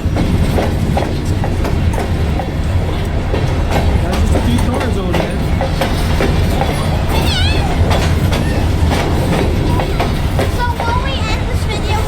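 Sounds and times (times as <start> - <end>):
train rumbling past: 0.0 - 12.0
wheels clacking over rail joints: 0.0 - 12.0.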